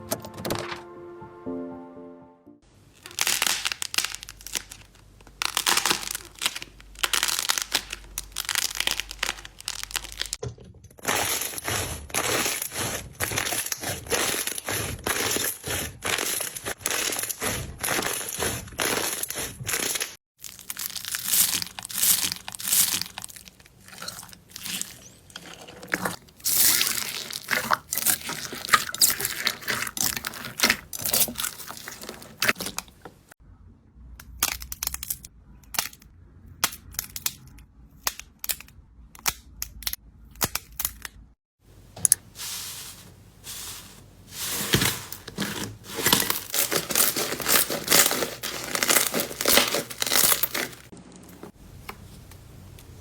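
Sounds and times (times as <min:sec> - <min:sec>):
slime crackling and popping: 0:03.0 - 0:10.4, 0:46.5 - 0:50.9.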